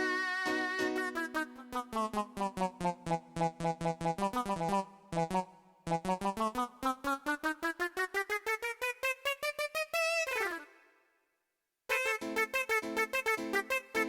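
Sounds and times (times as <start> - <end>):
synth keyboard playing fast notes: 0.0 - 4.5, 11.9 - 14.0.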